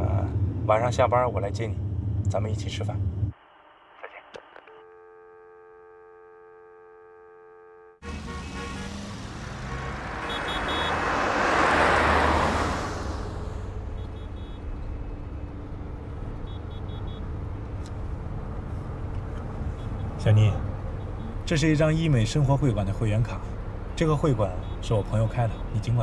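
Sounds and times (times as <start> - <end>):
vehicle passing close: 8.0 - 24.0
road traffic noise: 8.0 - 26.0.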